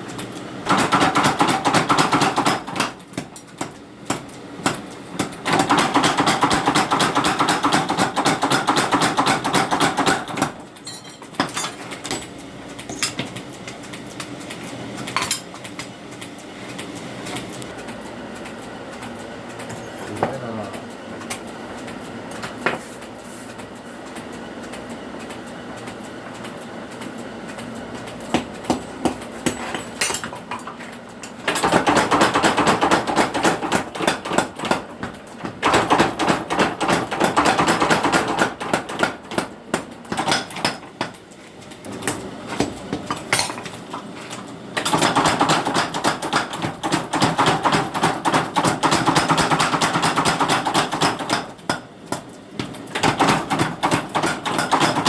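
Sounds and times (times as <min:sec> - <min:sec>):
hammer striking steel on anvil: 0:28.3 - 0:30.3.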